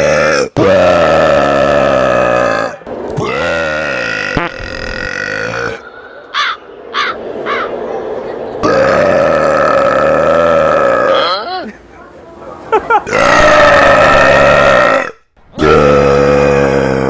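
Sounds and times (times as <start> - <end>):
belch-like croaking: 0.0 - 5.8, 8.6 - 11.5, 13.1 - 17.0.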